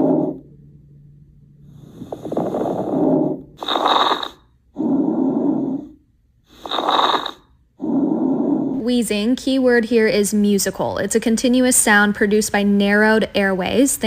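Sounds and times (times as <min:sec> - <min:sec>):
breathing in and out: 0:01.5 - 0:08.8.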